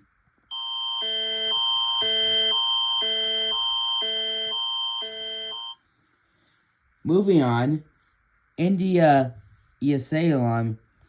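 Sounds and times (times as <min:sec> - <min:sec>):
alternating emergency alert tone: 0:00.5 - 0:05.9.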